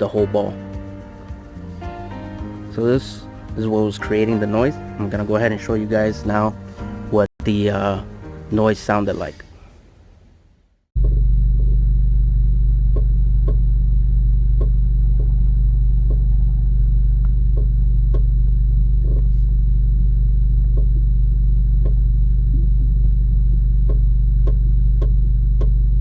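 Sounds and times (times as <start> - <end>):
car engine idling hum: 11.0 - 26.0
suspension clicking: 11.0 - 26.0.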